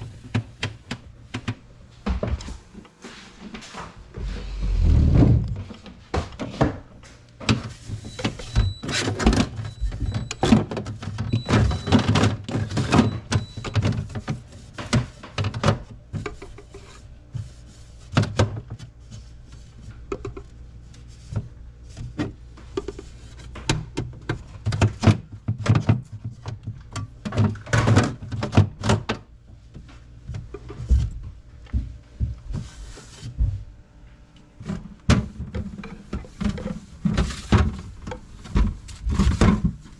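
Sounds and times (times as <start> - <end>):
objects knocking and clattering: 22.2 - 29.3.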